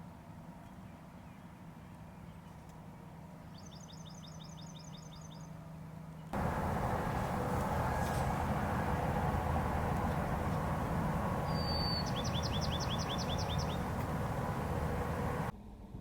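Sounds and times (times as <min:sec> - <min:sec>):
loud steady rushing noise: 0:06.4 - 0:15.5
low steady hum: 0:06.4 - 0:15.5
small bird trilling: 0:11.5 - 0:13.8.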